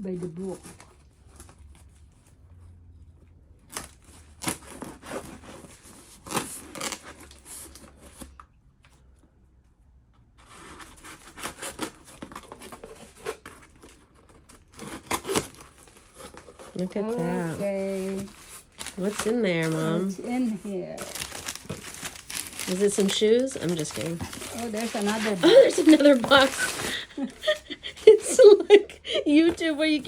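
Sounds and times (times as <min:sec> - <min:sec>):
cardboard box being torn open: 0:03.7 - 0:08.3, 0:10.6 - 0:28.8.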